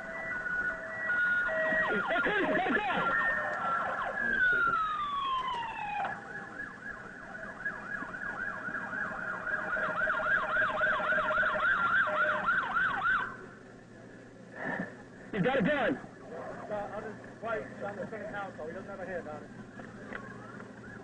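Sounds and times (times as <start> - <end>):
police siren wail and yelp: 0.0 - 13.4, 20.0 - 21.0.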